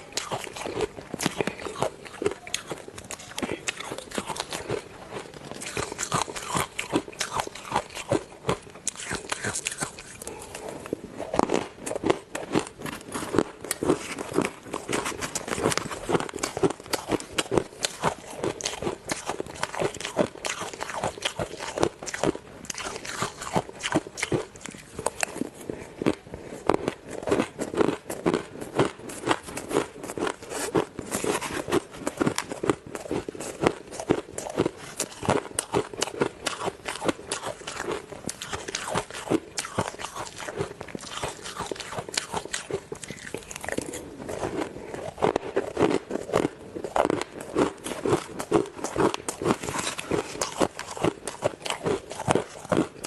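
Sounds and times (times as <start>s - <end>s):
crunching and chewing ice: 0.0s - 53.0s.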